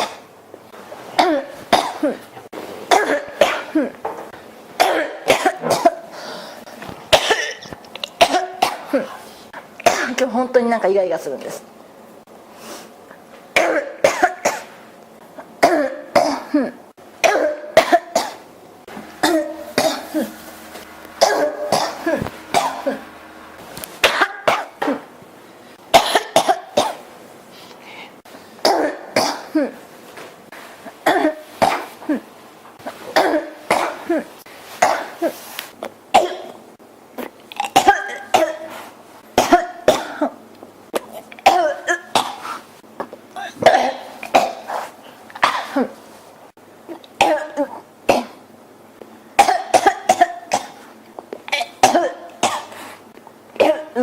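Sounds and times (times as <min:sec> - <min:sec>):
person coughing: 0:00.0 - 0:00.3, 0:01.2 - 0:02.3, 0:02.9 - 0:04.1, 0:04.8 - 0:06.2, 0:06.8 - 0:09.2, 0:09.8 - 0:10.3, 0:13.6 - 0:14.8, 0:15.6 - 0:23.2, 0:24.0 - 0:25.1, 0:25.9 - 0:27.0, 0:28.6 - 0:29.8, 0:31.0 - 0:35.4, 0:37.7 - 0:38.8, 0:39.4 - 0:40.4, 0:41.4 - 0:42.6, 0:43.4 - 0:44.8, 0:45.4 - 0:46.0, 0:47.2 - 0:48.4, 0:49.4 - 0:50.9, 0:51.5 - 0:52.8, 0:53.6 - 0:54.0
throat clearing: 0:00.0 - 0:00.3, 0:01.2 - 0:04.2, 0:04.8 - 0:06.1, 0:19.0 - 0:20.4, 0:21.2 - 0:23.2, 0:43.4 - 0:44.7.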